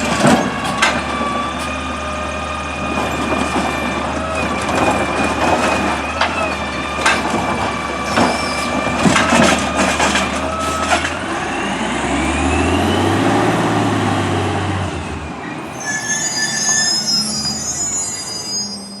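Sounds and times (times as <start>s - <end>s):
garbage truck engine whining: 0.0s - 19.0s
high squeals: 7.9s - 8.8s, 15.4s - 19.0s.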